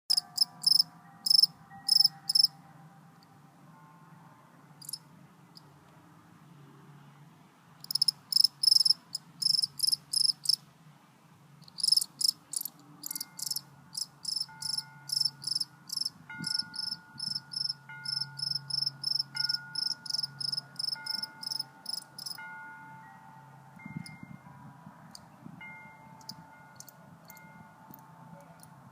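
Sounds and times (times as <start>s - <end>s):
cricket chirping: 0.1s - 2.5s, 4.8s - 5.0s, 7.8s - 10.6s, 11.6s - 22.4s, 26.2s - 28.0s.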